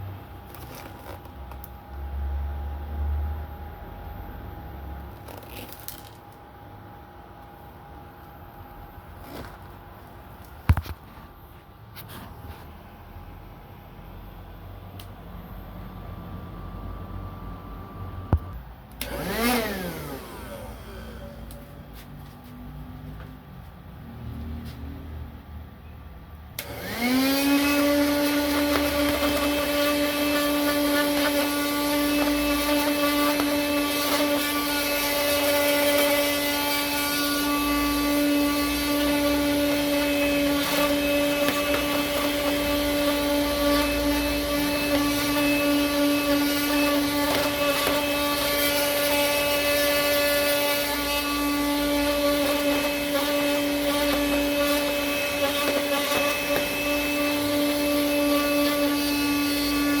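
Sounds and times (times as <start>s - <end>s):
vacuum cleaner motor whining: 0.3s - 2.5s, 9.1s - 9.8s, 16.6s - 21.8s, 26.6s - 60.0s.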